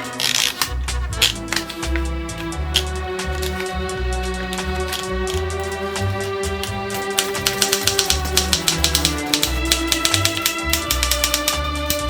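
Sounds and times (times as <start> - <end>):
background music with pulsing bass: 0.0 - 12.0
faint clicks: 4.5 - 12.0.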